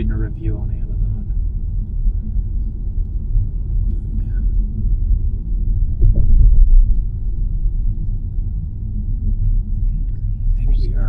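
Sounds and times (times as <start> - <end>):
car driving rumble inside cabin: 0.0 - 11.0.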